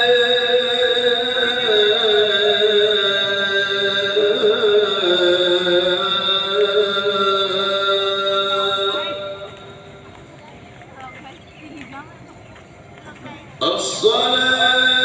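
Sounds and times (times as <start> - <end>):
man singing call to prayer: 0.0 - 10.0, 13.6 - 15.0.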